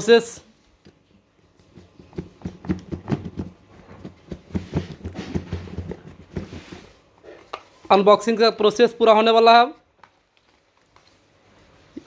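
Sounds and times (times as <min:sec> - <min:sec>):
hands handling box and packaging: 0:00.6 - 0:08.0.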